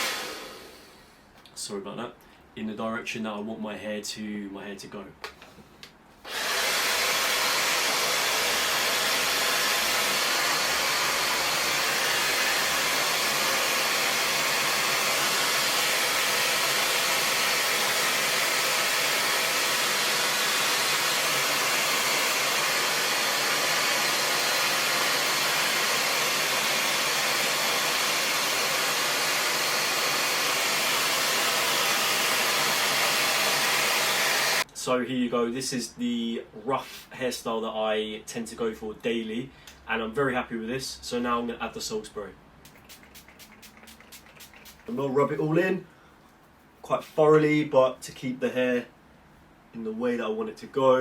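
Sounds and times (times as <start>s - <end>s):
hair dryer blowing: 0.0s - 1.0s, 6.2s - 34.7s, 42.7s - 45.2s
hair dryer switch: 5.2s - 34.6s.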